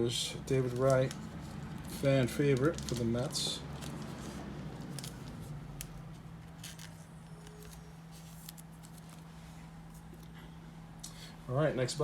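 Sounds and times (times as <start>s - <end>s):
low electrical hum: 0.0s - 12.0s
trading cards clicking and rustling: 0.5s - 9.3s.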